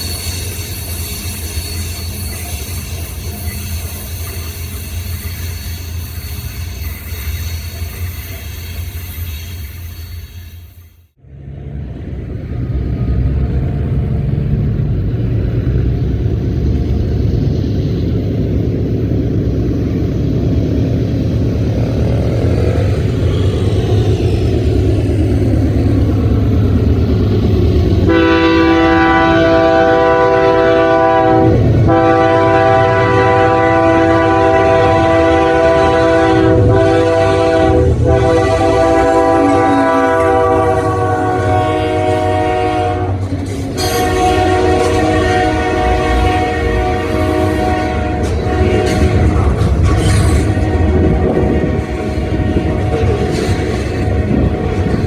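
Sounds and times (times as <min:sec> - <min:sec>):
locomotive engine rumble: 0:11.1 - 0:55.0
multi-chime train air horn: 0:28.1 - 0:43.2, 0:43.8 - 0:49.3, 0:50.4 - 0:55.0.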